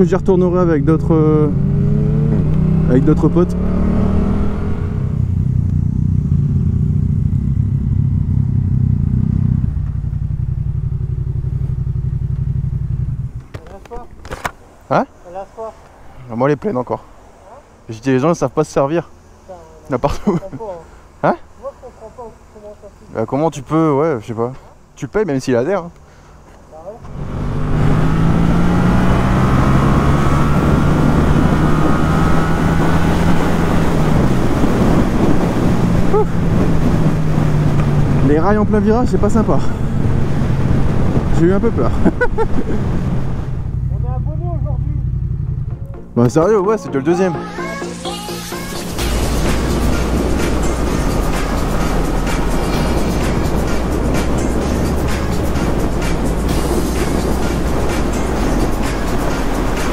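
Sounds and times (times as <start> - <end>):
motorcycle engine running: 5.0 - 13.8, 27.1 - 46.6, 49.0 - 59.9
wind rushing over microphone: 27.1 - 43.9, 49.0 - 59.9.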